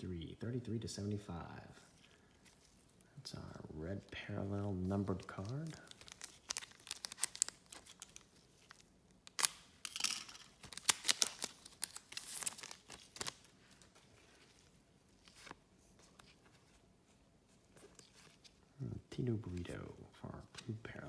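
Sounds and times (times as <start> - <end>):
foil wrapper crinkling: 4.8 - 15.6.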